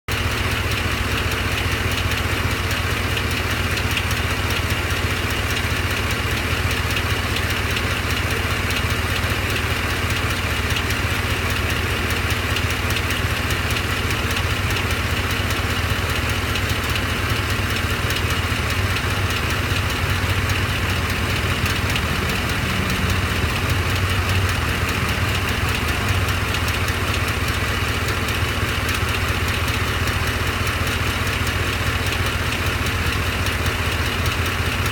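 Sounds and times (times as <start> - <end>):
truck engine idling: 0.1 - 34.9
fast even ticking: 14.1 - 31.0.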